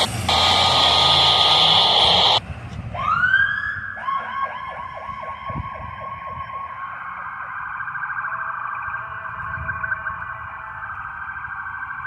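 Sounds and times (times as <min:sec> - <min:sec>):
ambulance siren: 0:00.0 - 0:02.4, 0:03.0 - 0:12.0
higher siren tone warbling: 0:00.0 - 0:02.4
low vehicle rumble: 0:00.0 - 0:07.3.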